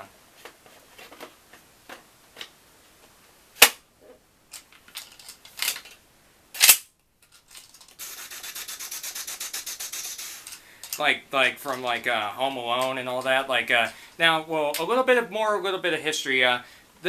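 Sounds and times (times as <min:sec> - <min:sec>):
magazine clicking into gun: 0:06.6 - 0:06.9.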